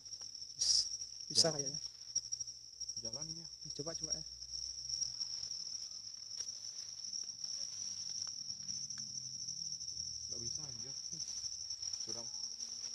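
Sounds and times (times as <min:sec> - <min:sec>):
insects trilling: 0:00.0 - 0:12.9
faint ticks: 0:08.1 - 0:09.2.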